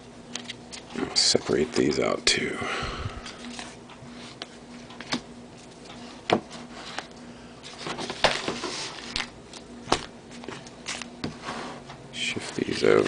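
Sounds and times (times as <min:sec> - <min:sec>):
faint steady hum: 0:00.0 - 0:13.0
cards being handled: 0:07.7 - 0:11.2.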